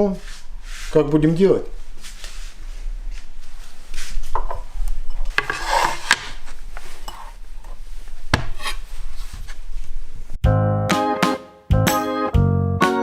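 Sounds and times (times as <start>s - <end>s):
knife scraping radish: 5.3s - 9.7s.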